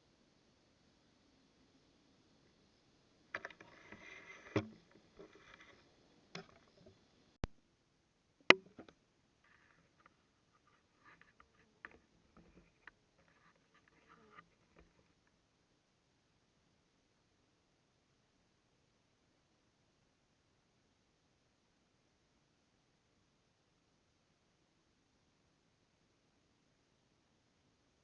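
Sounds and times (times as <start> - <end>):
sharp clicks and knocks: 8.5 - 15.1.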